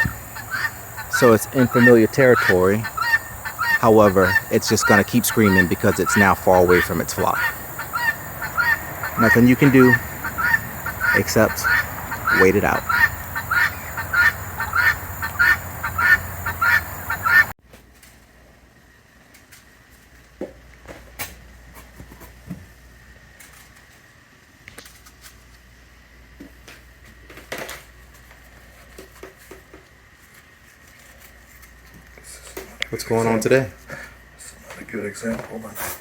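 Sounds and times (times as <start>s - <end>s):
guinea fowl screaming: 0.0s - 17.5s.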